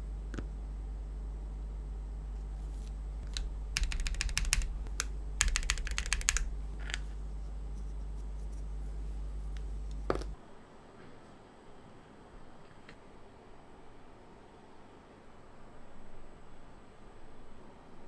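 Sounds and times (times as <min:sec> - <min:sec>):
mechanical keyboard typing: 0:03.2 - 0:07.1.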